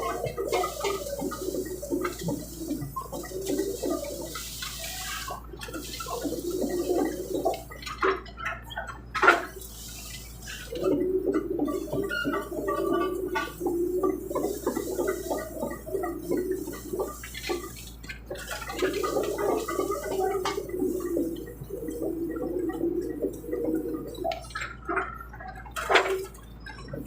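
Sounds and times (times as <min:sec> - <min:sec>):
excavator bucket sloshing mud: 0:00.0 - 0:27.0.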